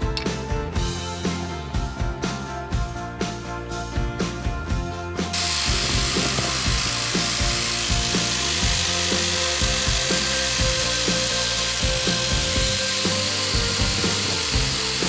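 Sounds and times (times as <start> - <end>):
background music with beat: 0.0 - 15.0
power tool hissing: 5.3 - 15.0.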